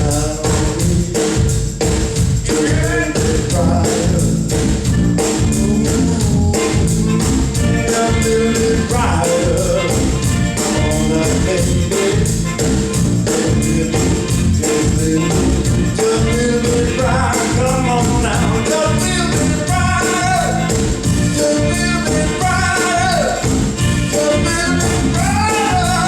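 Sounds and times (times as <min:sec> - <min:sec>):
person singing: 0:00.0 - 0:01.7, 0:02.4 - 0:26.0
bass: 0:00.0 - 0:26.0
live band playing: 0:00.0 - 0:26.0
steady drum beat: 0:00.0 - 0:26.0
sliding melody line: 0:02.8 - 0:26.0.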